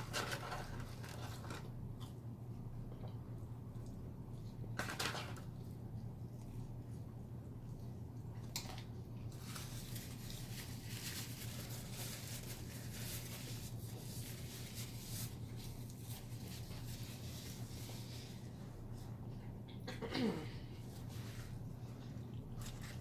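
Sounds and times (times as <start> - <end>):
steady low hum: 0.0 - 23.0
chewing food: 21.8 - 23.0.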